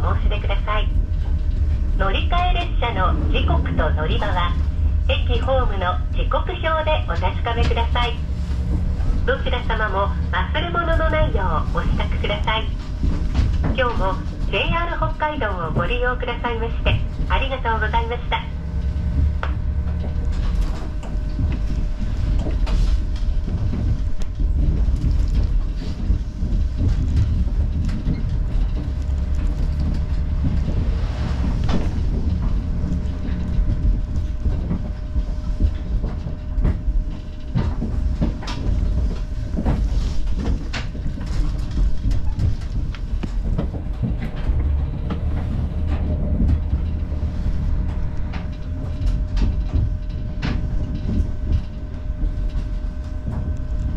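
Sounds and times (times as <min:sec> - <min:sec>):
railcar low rumble: 0:00.0 - 0:53.9
wheels clacking over rail joints: 0:16.9 - 0:53.9.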